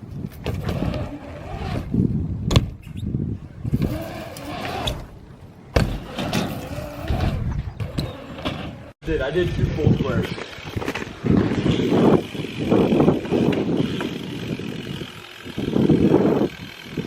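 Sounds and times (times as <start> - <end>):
bike tyres humming on concrete: 0.0 - 17.0
sharp knocks of landings: 0.2 - 8.9.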